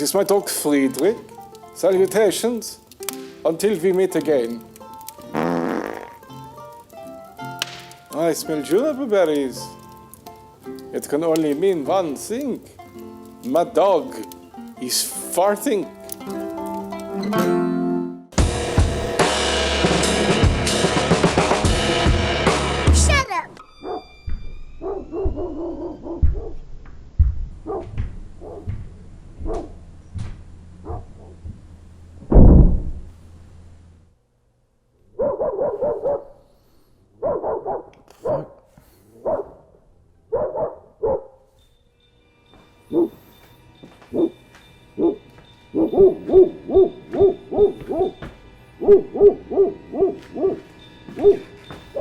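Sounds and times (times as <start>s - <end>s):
dog barking: 23.8s - 24.1s, 24.8s - 26.6s, 27.6s - 28.8s, 29.4s - 29.8s, 30.8s - 31.4s, 35.1s - 36.4s, 37.2s - 41.5s, 42.9s - 43.2s, 44.1s - 44.4s, 45.0s - 52.0s.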